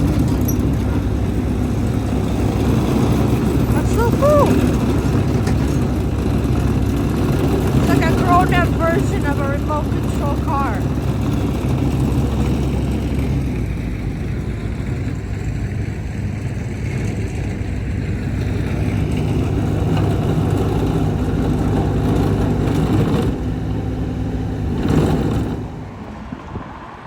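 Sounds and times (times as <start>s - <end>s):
vehicle engine rumbling: 0.0s - 27.0s.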